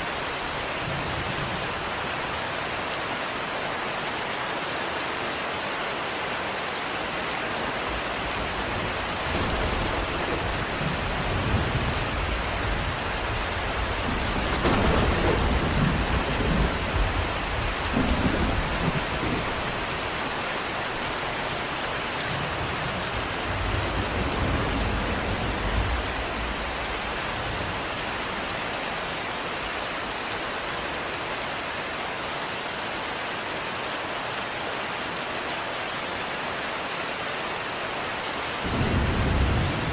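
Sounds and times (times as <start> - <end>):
heavy rain hissing: 0.0 - 39.9
low rumble of thunder: 7.9 - 20.3, 21.0 - 28.6, 38.6 - 39.9.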